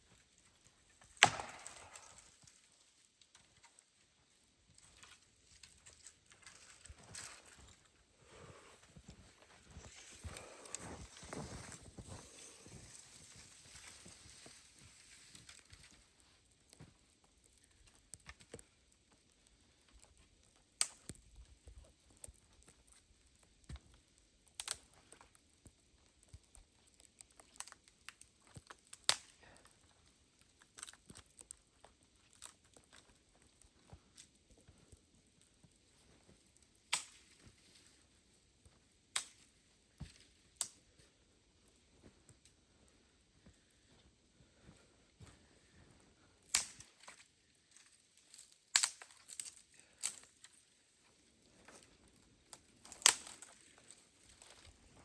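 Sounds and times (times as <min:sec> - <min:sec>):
sharp clicks and cracks: 0:00.9 - 0:03.9, 0:16.7 - 0:35.1, 0:36.5 - 0:37.5, 0:39.1 - 0:39.5, 0:40.6 - 0:40.9, 0:46.4 - 0:50.6, 0:51.6 - 0:55.0.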